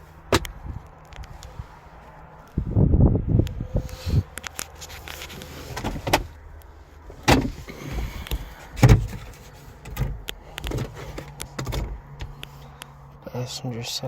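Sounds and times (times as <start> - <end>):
knocks and clunks: 0.3 - 0.6, 5.7 - 6.4, 7.1 - 12.5
loud thuds: 7.2 - 9.2.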